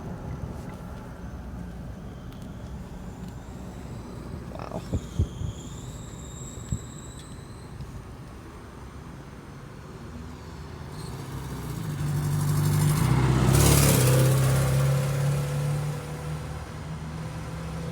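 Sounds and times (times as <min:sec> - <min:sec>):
car driving past: 0:10.0 - 0:17.9.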